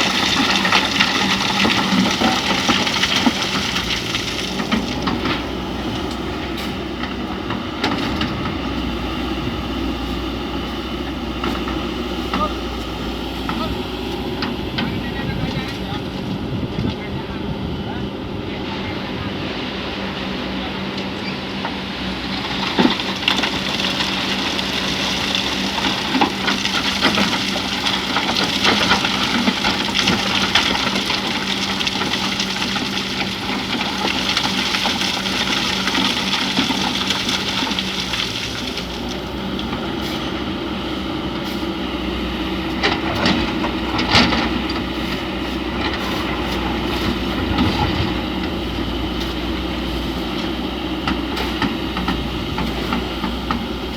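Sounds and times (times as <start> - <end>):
bucket scraping sand and stones: 0.0 - 7.0, 22.4 - 53.9
excavator diesel engine: 0.0 - 53.9.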